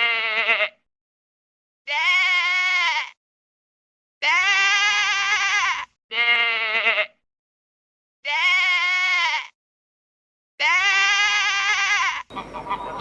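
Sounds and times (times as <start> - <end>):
animal bleating: 0.0 - 0.8, 1.9 - 3.2, 4.2 - 7.2, 8.2 - 9.6, 10.6 - 13.0.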